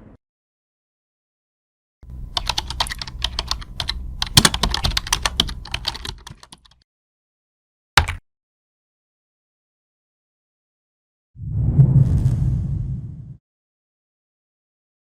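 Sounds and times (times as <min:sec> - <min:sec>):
computer keyboard typing: 0:02.3 - 0:06.8, 0:08.0 - 0:08.2.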